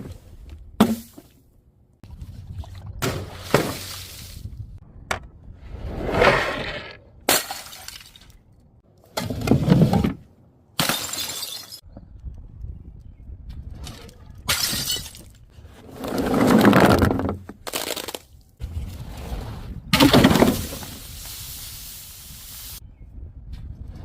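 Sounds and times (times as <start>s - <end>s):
glass bottles shattering: 10.8s - 11.8s, 14.5s - 15.3s.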